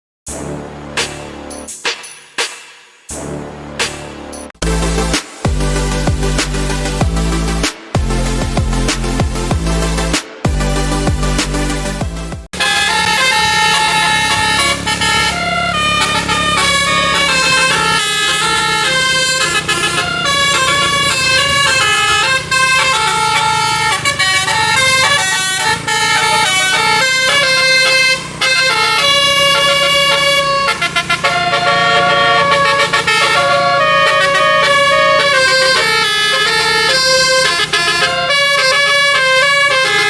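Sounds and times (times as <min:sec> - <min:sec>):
multi-tone musical air horns: 0:12.6 - 0:40.0.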